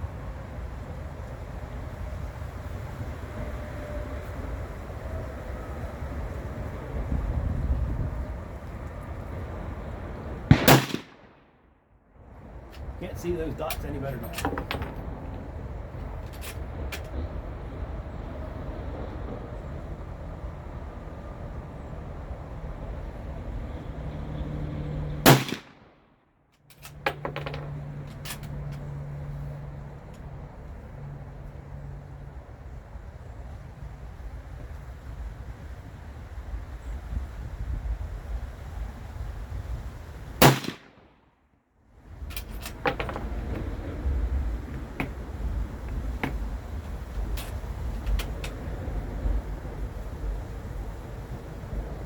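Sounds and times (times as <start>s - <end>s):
wind rumble on microphone: 0.0s - 11.1s, 12.2s - 25.6s, 27.1s - 41.0s, 42.0s - 52.0s
rifle shot: 10.5s - 11.4s, 25.3s - 25.9s, 40.4s - 41.1s.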